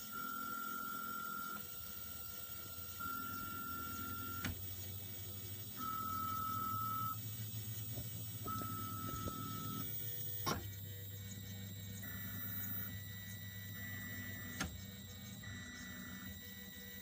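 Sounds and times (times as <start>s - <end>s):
stepper motors whining: 0.0s - 17.0s
low motor hum: 3.4s - 17.0s.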